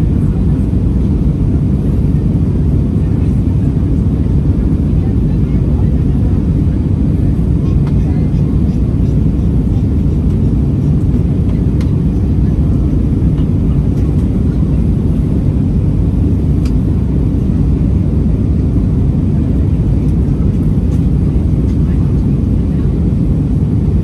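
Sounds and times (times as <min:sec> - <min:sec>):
airliner cabin rumble: 0:00.0 - 0:24.0.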